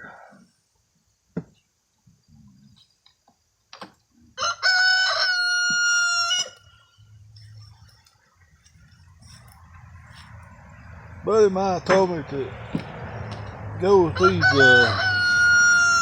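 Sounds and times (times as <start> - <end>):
rooster crowing: 4.3 - 7.2, 14.1 - 16.0.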